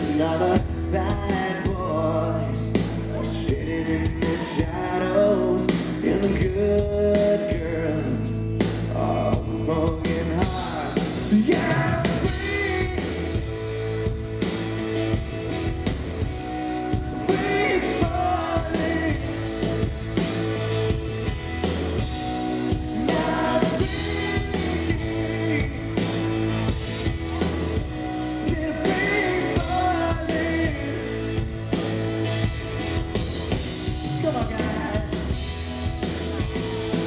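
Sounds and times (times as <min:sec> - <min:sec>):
man singing: 0:00.0 - 0:13.5, 0:16.9 - 0:20.0, 0:22.7 - 0:27.2, 0:28.3 - 0:31.6, 0:33.9 - 0:35.5
live rock band playing: 0:00.0 - 0:37.0.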